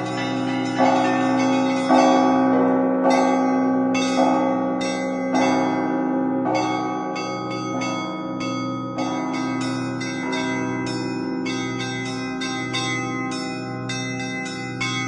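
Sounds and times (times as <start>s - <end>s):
church bells struck: 0.0s - 15.0s
large bell humming: 0.0s - 15.0s
small high bells: 0.0s - 15.0s.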